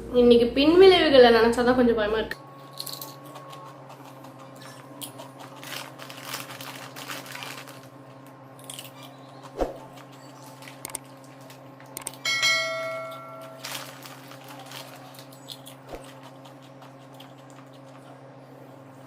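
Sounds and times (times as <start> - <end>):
potato chips crunching: 2.6 - 12.2, 13.0 - 18.2
bell-like ringing tone: 12.2 - 13.7.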